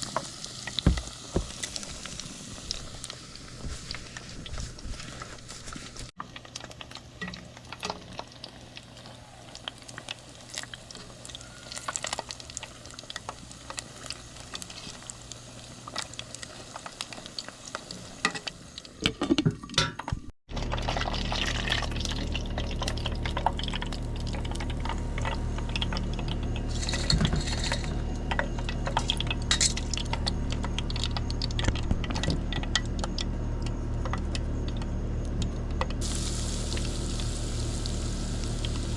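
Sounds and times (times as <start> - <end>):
fish frying in oil: 0.0 - 38.9
steady low hum: 20.5 - 38.9
pans and utensils clinking: 26.7 - 28.0.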